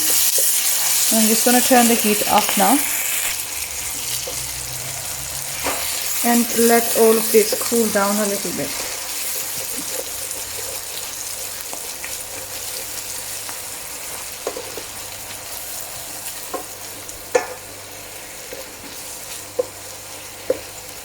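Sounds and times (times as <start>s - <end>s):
vegetables sizzling in oil: 0.0s - 21.0s.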